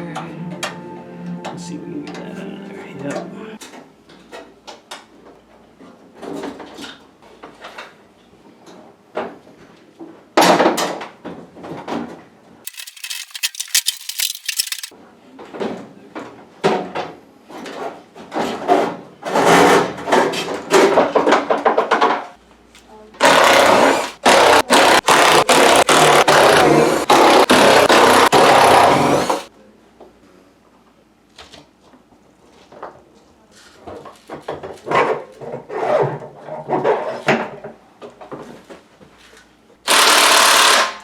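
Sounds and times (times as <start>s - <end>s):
tool scraping and grinding metal: 12.7s - 14.9s, 25.4s - 29.5s.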